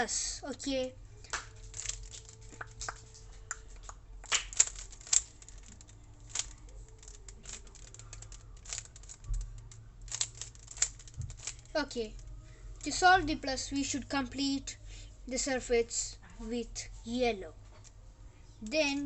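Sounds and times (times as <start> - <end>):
rubik's cube clicking: 1.7 - 12.2.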